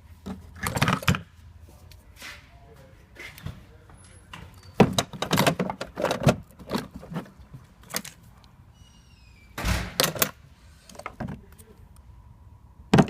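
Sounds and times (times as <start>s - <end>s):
tools rattling inside drawers: 0.3s - 1.2s, 4.6s - 8.2s, 9.9s - 11.4s
metal drawers sliding and clunking: 4.7s - 8.2s, 9.6s - 11.4s
faint rising squeak: 8.7s - 9.6s.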